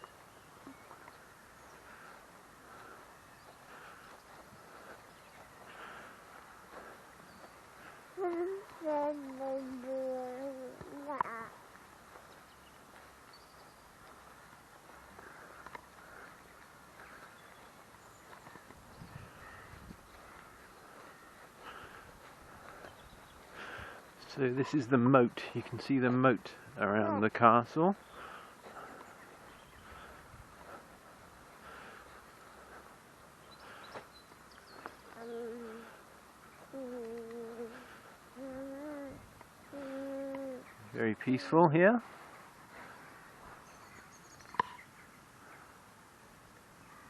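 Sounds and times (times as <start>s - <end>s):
distant caw-like bird calls: 0.9s - 8.2s, 14.2s - 17.7s, 19.2s - 24.1s, 28.0s - 30.8s
person humming: 8.2s - 8.6s, 35.2s - 36.0s, 36.7s - 40.7s.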